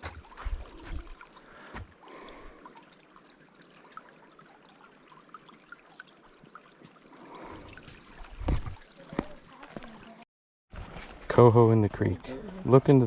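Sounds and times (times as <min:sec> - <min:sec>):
creek trickling: 0:00.0 - 0:10.2.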